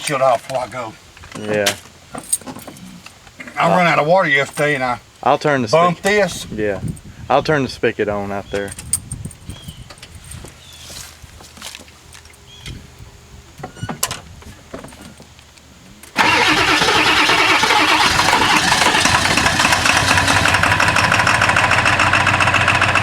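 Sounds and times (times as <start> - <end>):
diesel engine starting: 16.0 - 23.0.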